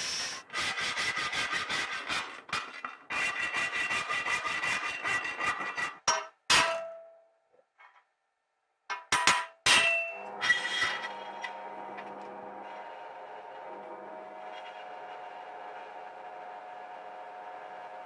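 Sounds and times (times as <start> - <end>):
metallic clangs: 8.9 - 10.3.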